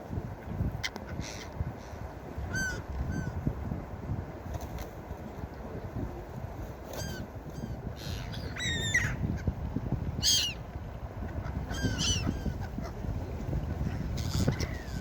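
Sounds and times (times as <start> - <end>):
seagulls crying: 7.0 - 9.2, 10.2 - 10.6, 11.5 - 12.9.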